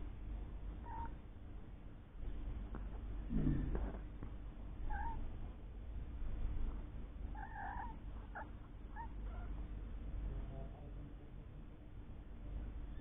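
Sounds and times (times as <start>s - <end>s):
kittens mewing: 4.9s - 5.2s, 7.4s - 9.6s.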